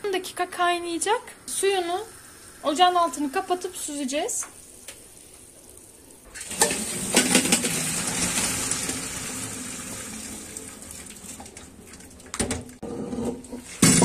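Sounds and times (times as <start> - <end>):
water pouring through strainer: 6.4 - 12.3.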